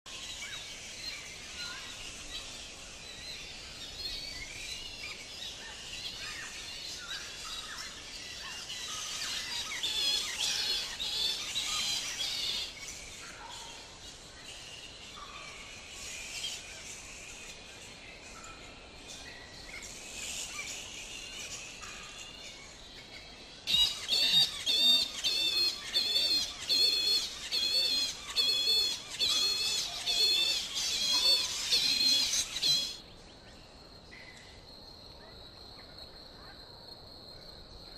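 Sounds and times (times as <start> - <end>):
birds chirping and calling: 0.1 - 33.0
loud wavering bird call: 23.7 - 33.0.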